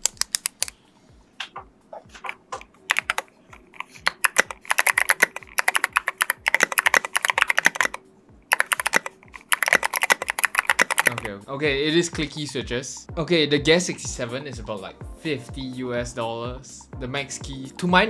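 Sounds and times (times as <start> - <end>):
mechanical keyboard typing: 0.0 - 0.7, 2.9 - 11.3.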